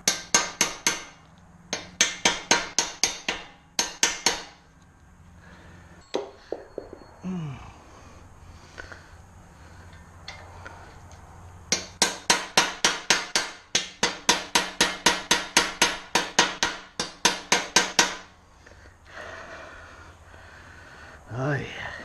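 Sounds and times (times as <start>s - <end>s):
hammer striking metal: 0.0s - 4.6s, 6.0s - 7.2s, 11.7s - 18.3s.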